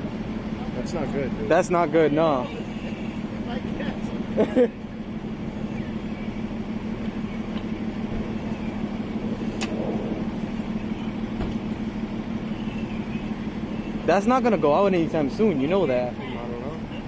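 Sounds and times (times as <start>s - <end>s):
vehicle engine idling: 0.0s - 17.0s
sharp click: 9.6s - 9.8s.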